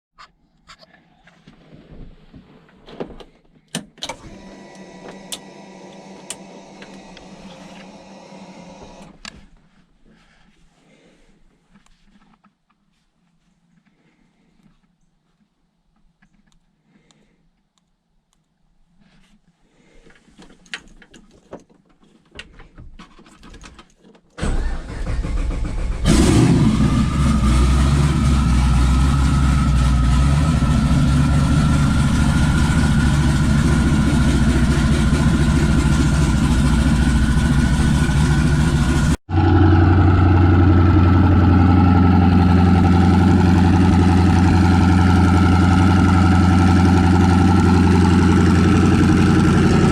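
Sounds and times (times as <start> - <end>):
engine running and idling: 4.0 - 9.1, 24.4 - 49.9
engine cranking: 24.4 - 39.2.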